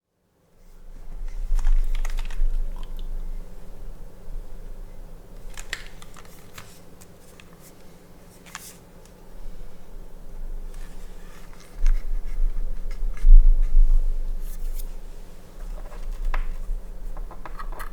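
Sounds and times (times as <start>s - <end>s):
steady low hum: 0.6s - 17.9s
mechanical keyboard keystrokes: 1.6s - 2.8s, 5.4s - 6.8s.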